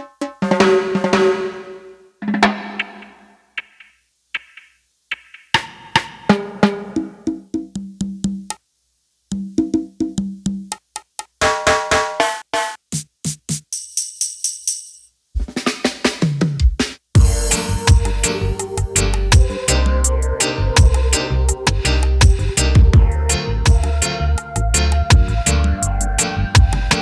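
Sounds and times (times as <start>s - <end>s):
groovebox percussion hits: 0.0s - 8.5s, 9.3s - 14.8s, 15.4s - 20.2s, 20.8s - 24.2s, 24.8s - 25.6s, 26.6s - 27.0s
high ringing notes: 17.2s - 21.6s
falling bass line: 17.2s - 27.0s
repeating keyboard notes: 17.2s - 27.0s.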